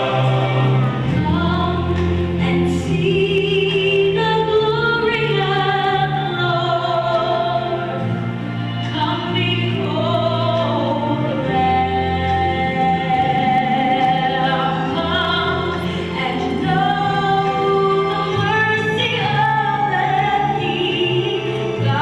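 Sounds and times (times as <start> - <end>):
choir singing held notes: 0.0 - 8.2.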